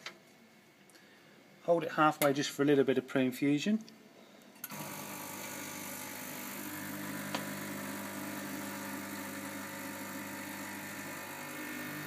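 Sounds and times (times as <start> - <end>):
espresso machine humming: 4.7 - 12.0.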